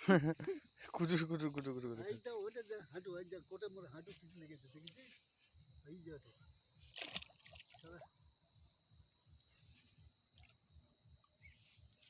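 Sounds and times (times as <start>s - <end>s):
insects chirring: 0.0s - 12.0s.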